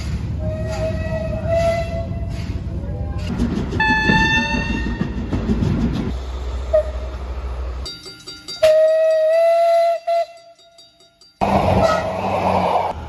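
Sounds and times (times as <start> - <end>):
train rumble: 0.0 - 10.5, 11.2 - 13.0
rushing train noise: 0.0 - 13.0
train horn: 0.4 - 2.3, 3.8 - 5.1, 8.6 - 10.6, 11.4 - 12.9.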